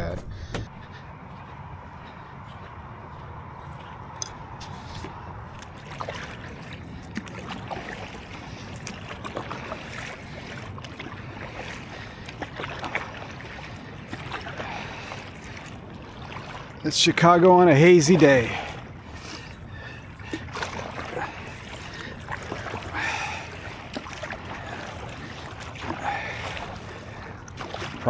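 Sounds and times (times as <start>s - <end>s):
steady low rumble: 0.0s - 7.1s
water splashing and trickling: 0.0s - 28.0s.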